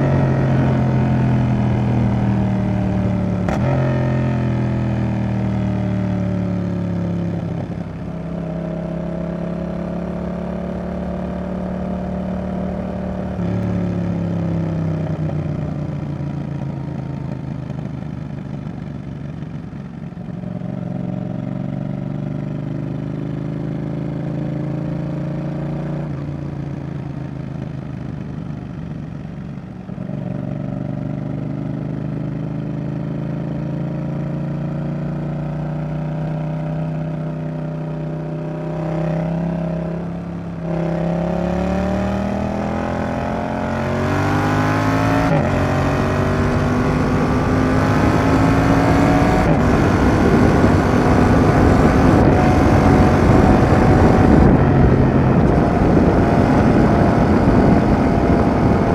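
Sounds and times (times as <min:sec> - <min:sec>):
motorcycle engine revving: 0:00.0 - 0:18.1, 0:30.0 - 0:58.9.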